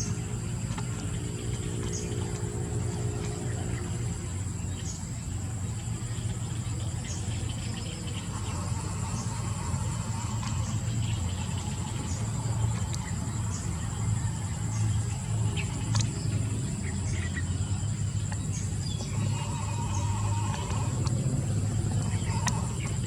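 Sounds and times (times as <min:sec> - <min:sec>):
low steady hum: 0:00.0 - 0:23.0
faint clicks: 0:15.8 - 0:16.2, 0:21.9 - 0:23.0.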